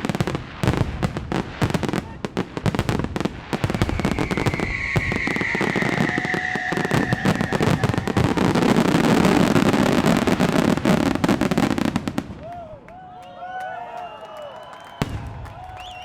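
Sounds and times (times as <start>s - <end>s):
fireworks bangs and crackling: 0.0s - 12.5s, 15.0s - 15.6s
firework whistle: 3.4s - 10.8s.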